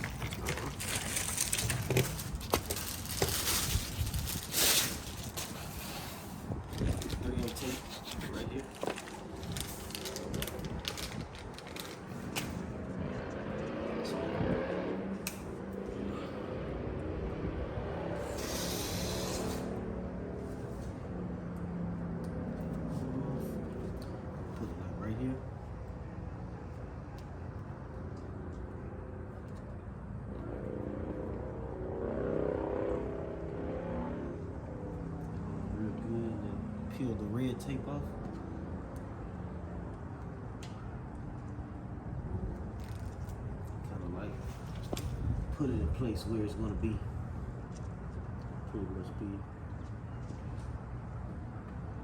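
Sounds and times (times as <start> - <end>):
steady low rumble: 0.0 - 17.8
engine passing by: 9.2 - 25.4, 30.1 - 39.9.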